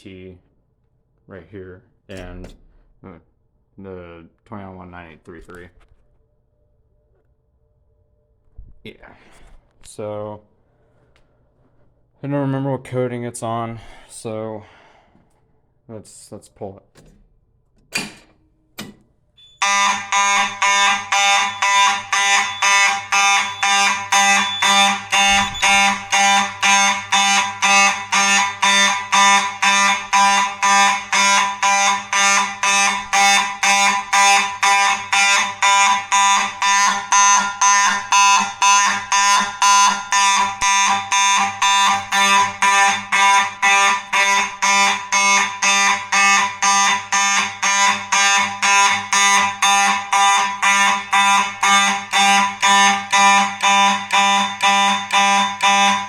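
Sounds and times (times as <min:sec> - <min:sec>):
fire alarm horns pulsing: 0:19.4 - 0:56.0.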